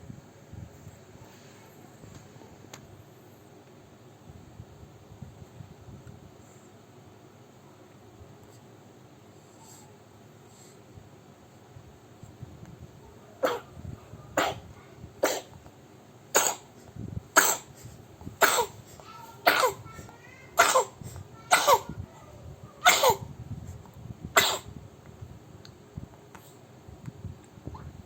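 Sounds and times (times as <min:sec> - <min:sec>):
child coughing: 0:13.4 - 0:13.8, 0:14.4 - 0:15.6, 0:16.3 - 0:16.7, 0:17.4 - 0:17.7, 0:18.4 - 0:22.0, 0:22.8 - 0:23.3, 0:24.4 - 0:24.7.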